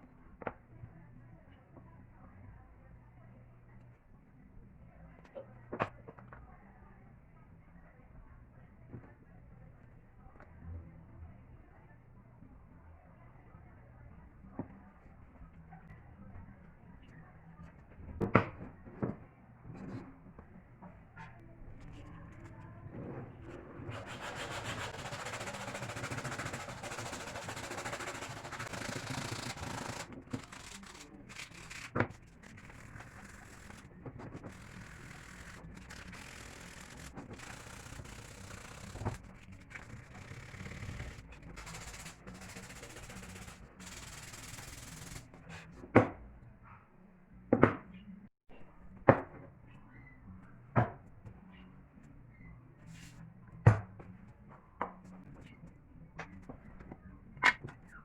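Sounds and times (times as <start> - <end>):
sandpaper rubbing on wood: 23.9 - 33.9, 34.5 - 45.2.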